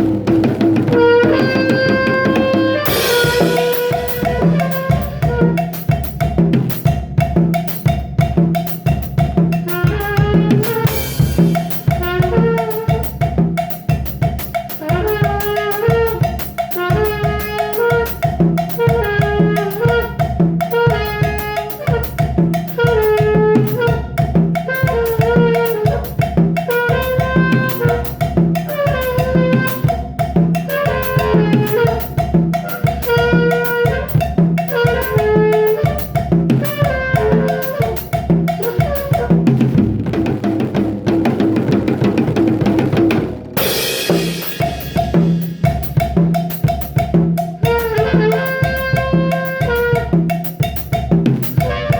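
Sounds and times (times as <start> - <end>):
drum kit steady beat: 0.0 - 51.9
horn-like melody: 0.9 - 5.9, 9.7 - 13.2, 14.8 - 39.6, 47.6 - 50.5, 51.6 - 51.9.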